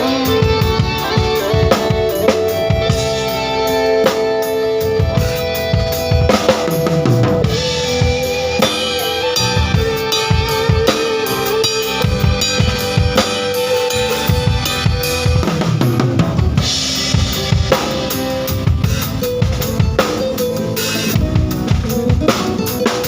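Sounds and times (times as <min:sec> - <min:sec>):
backing music track: 0:00.0 - 0:23.0
drum kit groove: 0:00.0 - 0:23.0.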